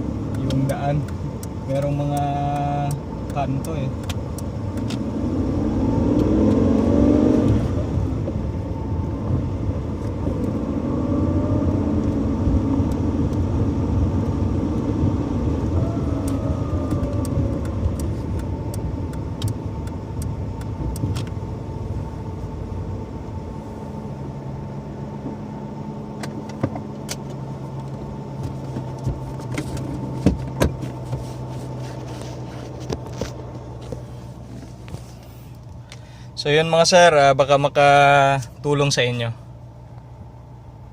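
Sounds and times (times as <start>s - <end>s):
car engine accelerating: 0.0s - 40.9s
sharp clicks: 0.3s - 5.0s, 16.2s - 21.4s.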